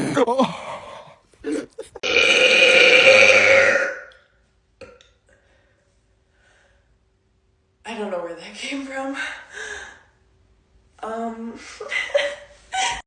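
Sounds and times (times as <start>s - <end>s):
woman burping: 1.4s - 4.1s, 4.8s - 5.1s.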